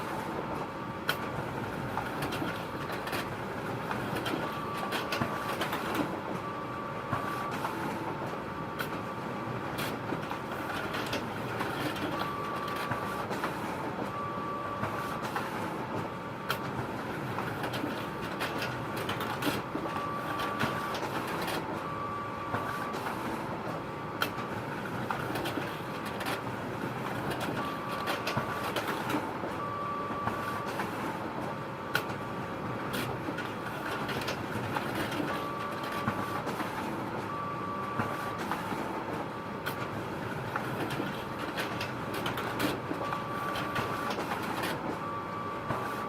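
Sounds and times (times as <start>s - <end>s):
photocopier whirring: 0.0s - 46.0s.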